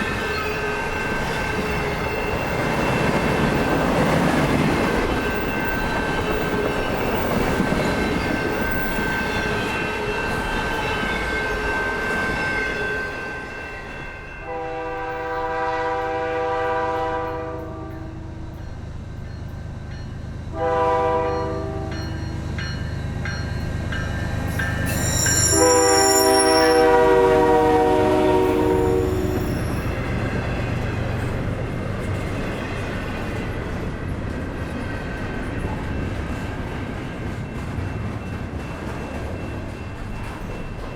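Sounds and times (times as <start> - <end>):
freight train track noise: 0.0 - 40.9
locomotive horn blasts: 14.4 - 18.2, 20.5 - 22.1, 25.2 - 29.5
thin steady squeal: 24.6 - 26.9.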